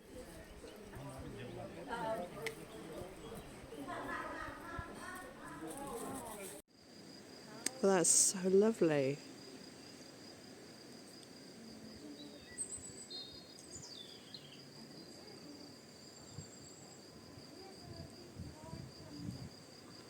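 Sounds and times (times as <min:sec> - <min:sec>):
crickets trilling: 0:00.0 - 0:20.0.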